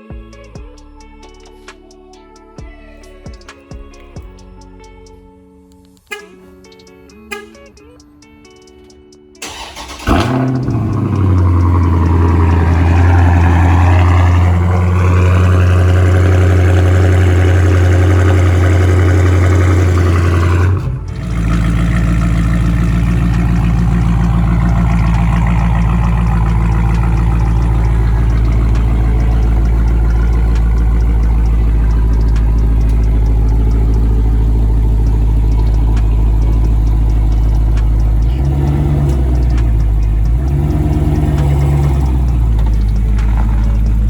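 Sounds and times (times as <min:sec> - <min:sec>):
loud car engine running: 0:09.4 - 0:44.0.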